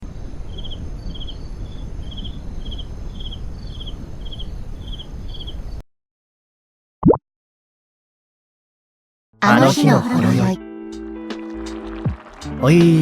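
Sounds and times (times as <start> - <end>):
insect chirping: 0.1 - 5.8.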